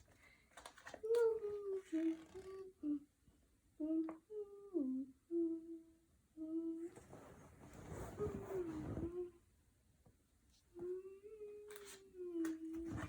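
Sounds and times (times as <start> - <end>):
person humming: 1.0 - 3.1, 3.8 - 7.0, 10.8 - 13.0.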